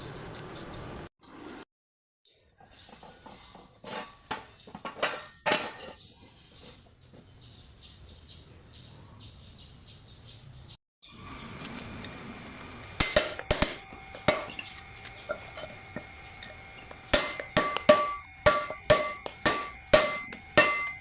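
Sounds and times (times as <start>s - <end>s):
low steady hum: 11.1s - 21.0s
hard objects knocking and clinking: 13.0s - 21.0s.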